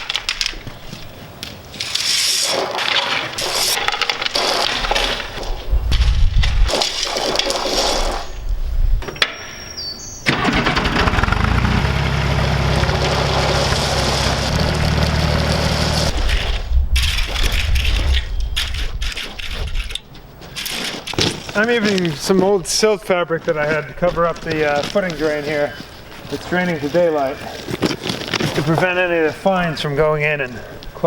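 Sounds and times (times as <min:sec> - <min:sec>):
machine engine droning: 0:10.4 - 0:16.2.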